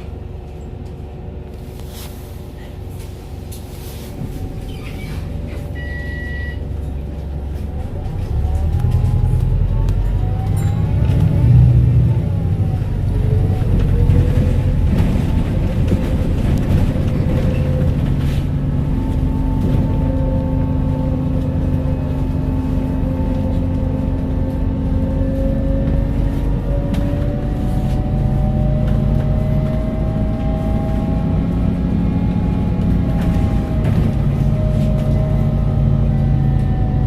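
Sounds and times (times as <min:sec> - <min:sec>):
bus engine droning: 0:00.0 - 0:37.0.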